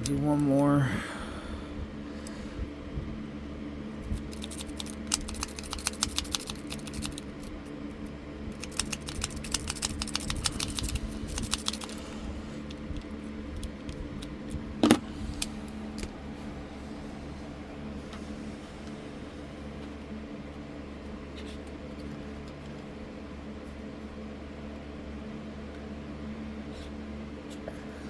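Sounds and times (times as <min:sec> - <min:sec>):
sharp metal click: 0:04.2 - 0:07.3
lock pick clicking in lock: 0:04.3 - 0:07.3.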